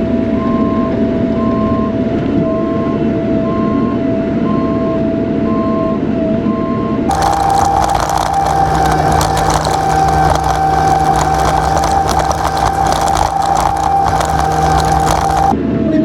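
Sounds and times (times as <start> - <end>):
excavator diesel engine running: 7.1 - 15.6
high whine: 7.1 - 15.6.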